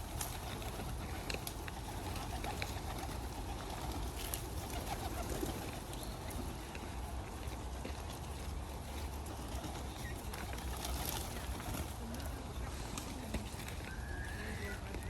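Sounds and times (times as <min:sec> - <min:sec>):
pigeons cooing: 0:00.0 - 0:07.3.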